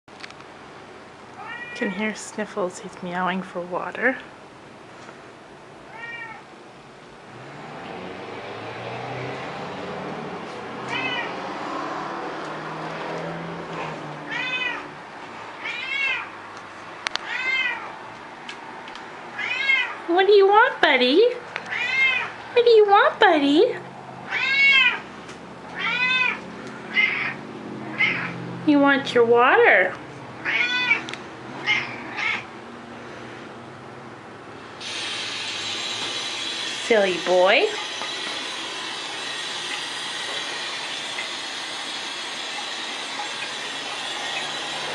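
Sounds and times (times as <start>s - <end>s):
cat meowing: 1.4s - 1.8s, 5.9s - 6.5s, 10.8s - 11.4s, 14.3s - 15.0s, 15.6s - 16.3s, 17.2s - 18.0s, 19.3s - 20.0s, 21.7s - 22.4s, 24.2s - 25.1s, 25.7s - 28.4s, 30.4s - 32.5s.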